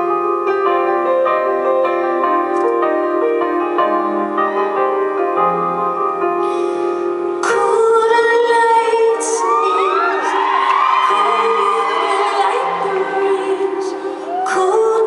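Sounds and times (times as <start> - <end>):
piano: 0.0 - 15.0
woman singing: 7.4 - 15.0.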